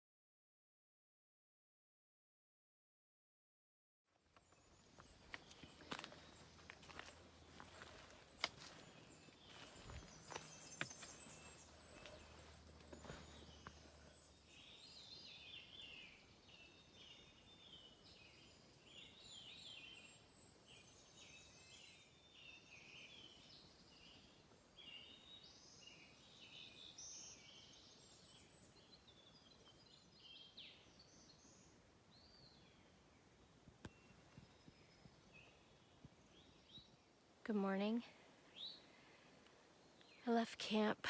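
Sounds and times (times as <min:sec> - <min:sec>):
songbirds singing: 0:04.2 - 0:41.0.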